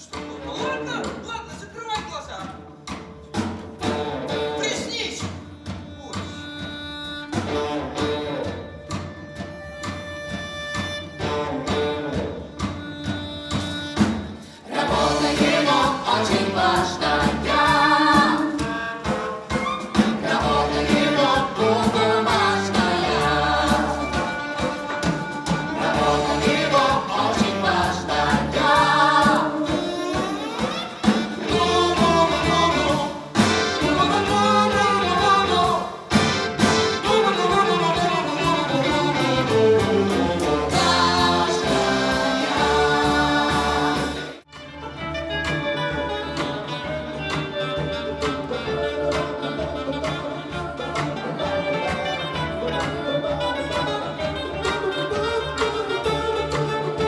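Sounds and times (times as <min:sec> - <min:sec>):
orchestra playing: 0:00.0 - 0:57.0
percussion: 0:00.0 - 0:57.0
voices singing: 0:13.0 - 0:44.4.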